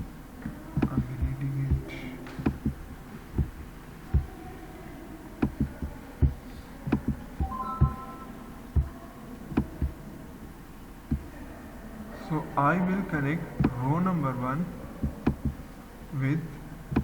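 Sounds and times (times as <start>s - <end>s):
steady hum: 0.0s - 17.0s
computer mouse clicking: 0.8s - 4.3s, 5.4s - 8.0s, 9.5s - 10.0s, 15.0s - 15.6s.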